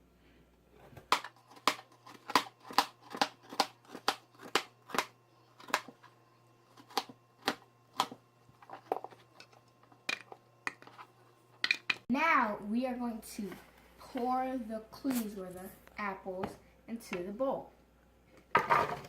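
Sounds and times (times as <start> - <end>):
knife chopping apples: 1.0 - 9.2.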